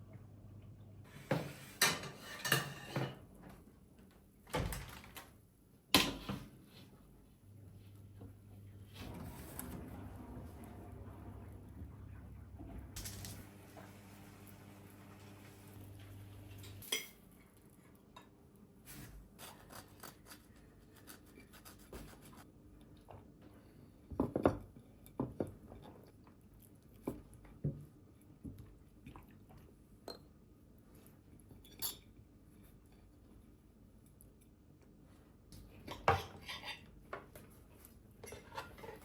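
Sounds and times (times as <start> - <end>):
dishes and utensils clinking: 1.3 - 3.3, 16.5 - 17.2
low steady hum: 7.2 - 17.7.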